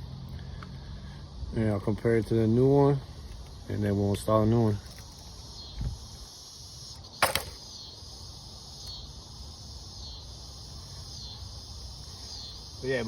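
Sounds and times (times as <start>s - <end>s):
insects chirping: 0.0s - 13.0s
sharp click: 7.2s - 7.6s.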